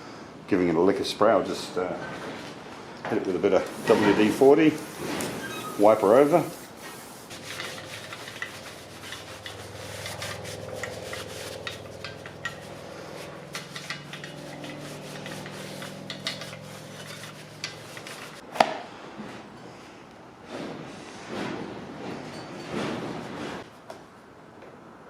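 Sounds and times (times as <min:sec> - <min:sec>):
rag rubbing on metal: 0:03.7 - 0:18.4.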